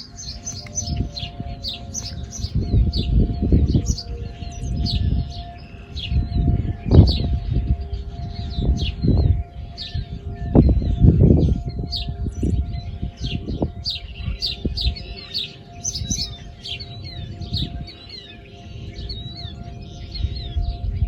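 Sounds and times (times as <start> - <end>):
distant warning sirens: 0.0 - 21.0
small birds chirping: 0.0 - 21.0.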